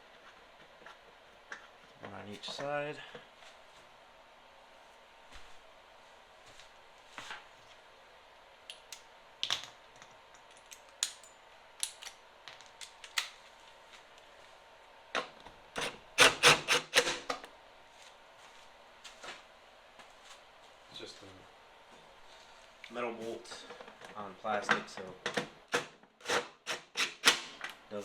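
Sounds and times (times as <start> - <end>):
ratchet clicking: 15.8 - 17.2.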